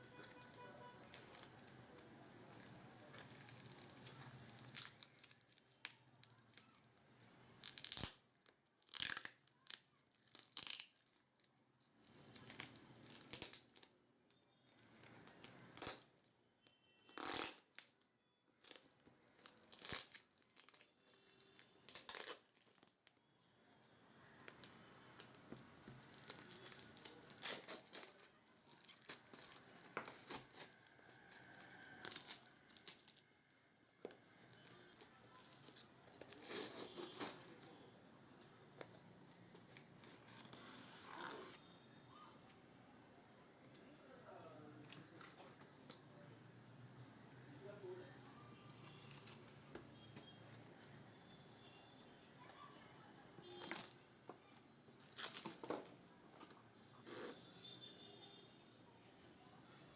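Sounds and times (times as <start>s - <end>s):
plastic wrap and paper tearing: 0.0s - 13.9s, 15.0s - 16.3s, 18.6s - 23.1s, 24.2s - 42.3s.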